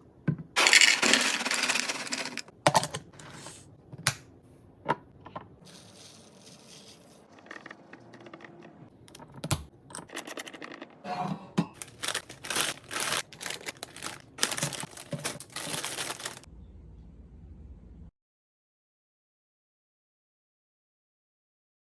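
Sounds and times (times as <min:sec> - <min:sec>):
packaging crinkling and tearing: 0:11.8 - 0:16.5.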